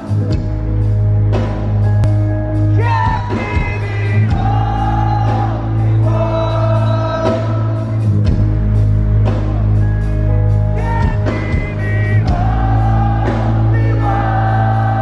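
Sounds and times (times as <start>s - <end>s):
rock band playing live: 0.0s - 15.0s
crowd singing along: 2.7s - 8.1s, 10.8s - 15.0s.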